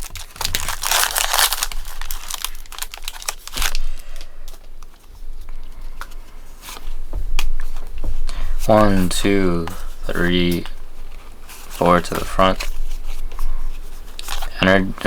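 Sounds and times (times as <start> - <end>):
foil wrapper crinkling and tearing: 0.0 - 4.9.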